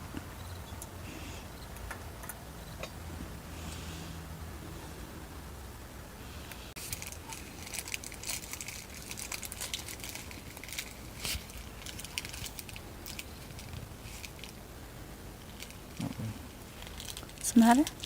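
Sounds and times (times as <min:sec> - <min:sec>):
screws and packaging crinkling: 0:06.8 - 0:14.6, 0:15.4 - 0:18.0.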